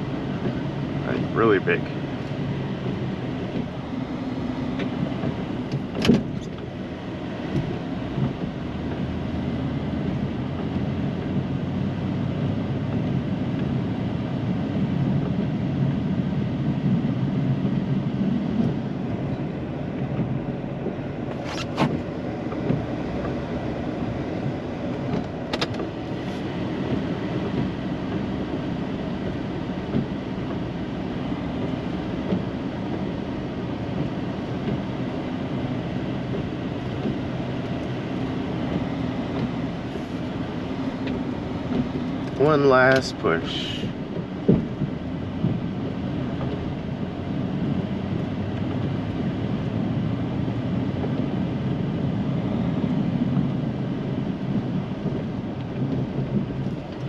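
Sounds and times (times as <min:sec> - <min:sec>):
truck engine rumbling: 0:00.0 - 0:13.0.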